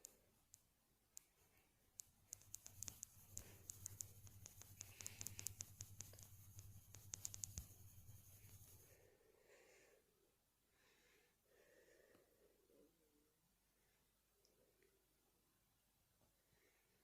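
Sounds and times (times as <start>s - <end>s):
rapid irregular clicking and scratching: 0.0s - 8.9s
low steady hum: 0.0s - 15.9s.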